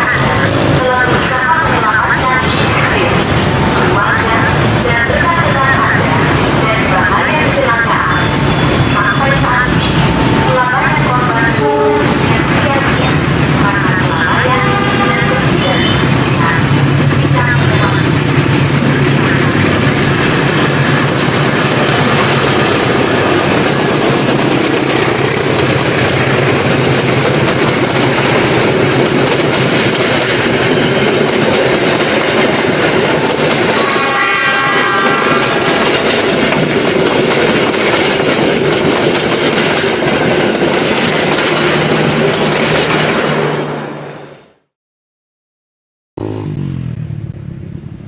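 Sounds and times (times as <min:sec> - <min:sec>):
train wheels rumbling on rails: 0:00.0 - 0:44.2.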